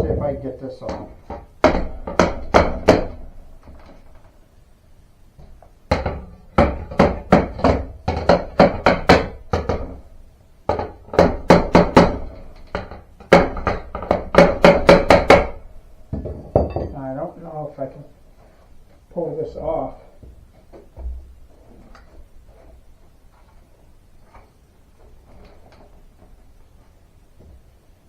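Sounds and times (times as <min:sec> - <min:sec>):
hammer blows on door frame: 0:01.3 - 0:03.2, 0:05.9 - 0:10.0, 0:10.7 - 0:15.6.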